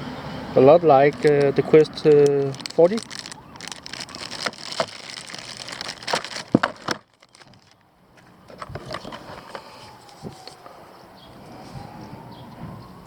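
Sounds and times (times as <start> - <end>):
packaging rustling and crackling: 0.6 - 7.8
clicks and knocks of handling: 1.1 - 9.7.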